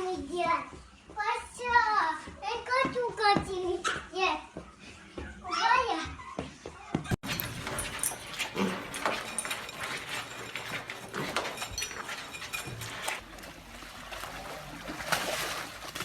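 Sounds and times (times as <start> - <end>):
scuffling noises: 7.2 - 16.0.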